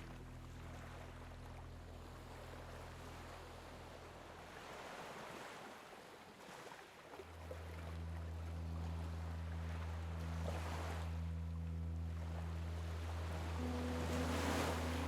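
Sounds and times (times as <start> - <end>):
low steady hum: 0.0 - 5.0, 7.2 - 15.0
sea waves washing: 12.6 - 15.0.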